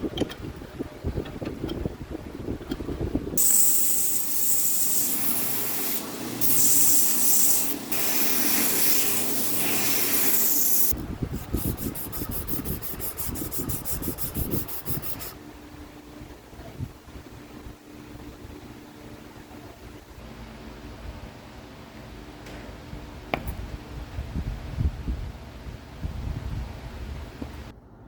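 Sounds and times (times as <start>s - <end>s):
fast rubbing strokes: 3.4s - 15.4s
sanding hiss on a knife: 3.4s - 15.4s.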